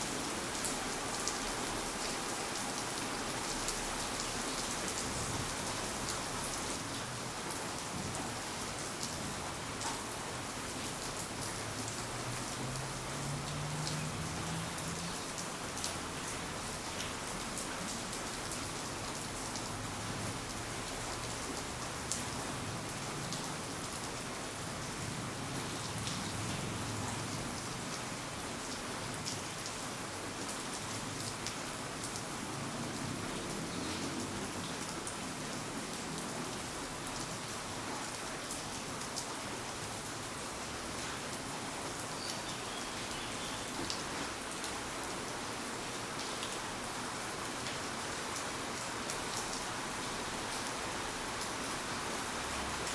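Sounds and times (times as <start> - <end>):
steady rain hiss: 0.0 - 52.9.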